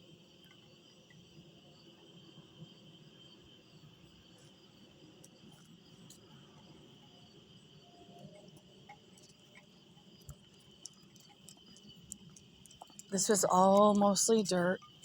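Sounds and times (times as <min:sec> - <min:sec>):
insect chorus drone: 0:00.0 - 0:15.0
faint ticks: 0:05.2 - 0:06.7, 0:08.2 - 0:15.0.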